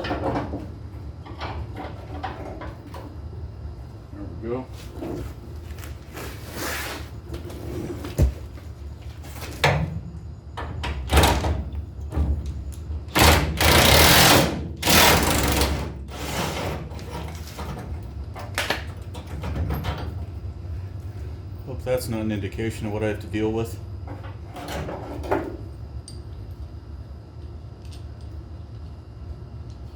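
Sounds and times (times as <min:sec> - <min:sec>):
impact wrench bursts: 0:13.1 - 0:15.9.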